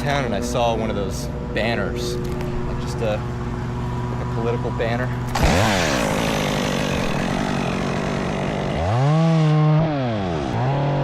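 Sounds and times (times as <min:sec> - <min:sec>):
chainsaw revving: 0:05.2 - 0:11.0.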